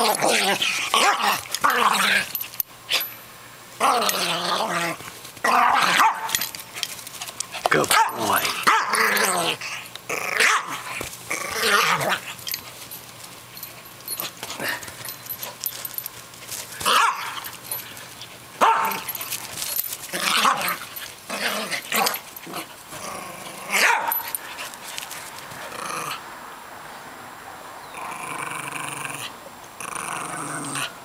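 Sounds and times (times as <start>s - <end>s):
dog growling: 0.0s - 2.4s, 3.8s - 6.1s, 7.7s - 12.6s, 14.5s - 15.5s, 20.1s - 23.9s, 25.6s - 26.2s, 28.0s - 31.0s
dog barking: 16.9s - 17.4s, 18.6s - 19.0s, 23.8s - 24.2s.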